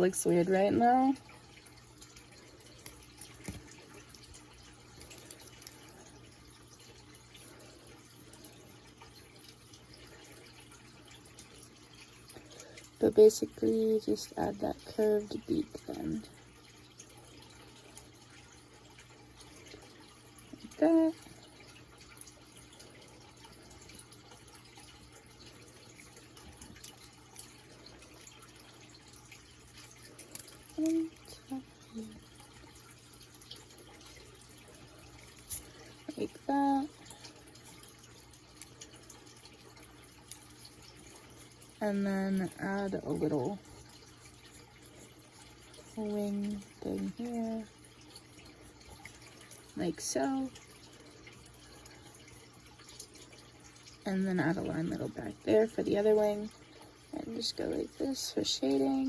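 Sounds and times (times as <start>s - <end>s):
low steady hum: 0.0s - 59.0s
small ticks: 2.0s - 7.5s, 23.4s - 36.0s.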